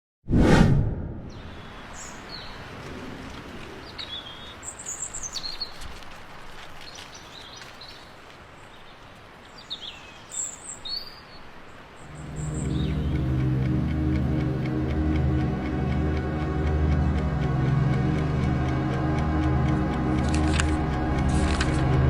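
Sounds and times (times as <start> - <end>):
birds chirping: 1.3 - 5.9, 6.8 - 22.0
steady outdoor hiss: 1.3 - 22.0
music: 12.1 - 22.0.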